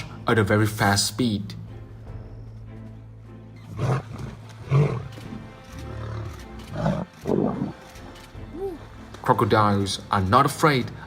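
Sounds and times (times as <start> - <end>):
background music: 0.0 - 11.0
lions roaring and growling: 3.6 - 7.9.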